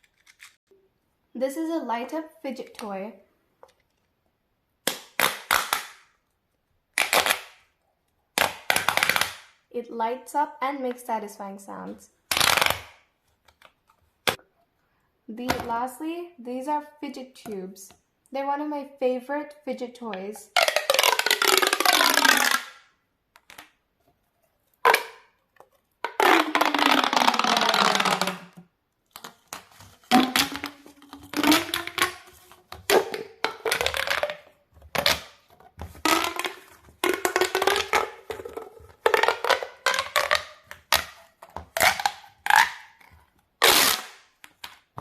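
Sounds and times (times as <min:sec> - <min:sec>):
plastic pop tube rasping: 0:04.9 - 0:06.1, 0:06.9 - 0:07.6, 0:08.4 - 0:09.6, 0:12.3 - 0:14.6, 0:20.4 - 0:45.0.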